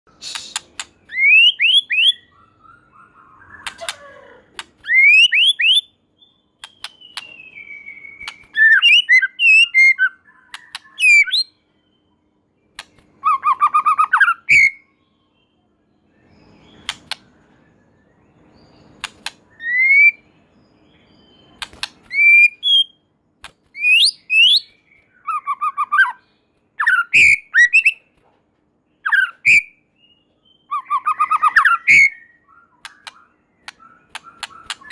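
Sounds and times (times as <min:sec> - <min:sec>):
bird sharp clicks: 0:00.2 - 0:01.0, 0:03.6 - 0:05.0, 0:06.6 - 0:07.4, 0:08.2 - 0:08.6, 0:10.5 - 0:11.1, 0:12.7 - 0:13.1, 0:16.8 - 0:17.3, 0:19.0 - 0:19.4, 0:21.6 - 0:22.2, 0:32.8 - 0:34.9
bird singing whistled phrases: 0:00.2 - 0:12.2, 0:13.2 - 0:15.5, 0:19.5 - 0:23.0, 0:23.8 - 0:26.2, 0:26.8 - 0:28.0, 0:29.0 - 0:34.9.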